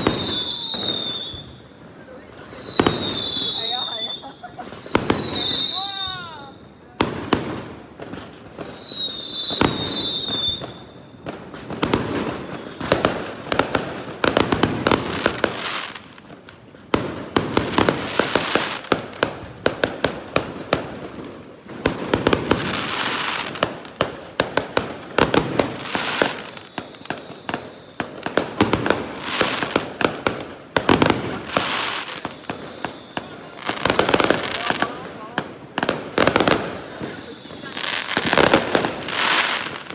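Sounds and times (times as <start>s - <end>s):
falling firework whistle: 0.0s - 1.8s, 2.4s - 7.0s, 8.5s - 13.6s, 24.5s - 30.2s, 30.9s - 35.0s, 36.1s - 39.9s
fireworks crackling and popping: 0.0s - 39.9s.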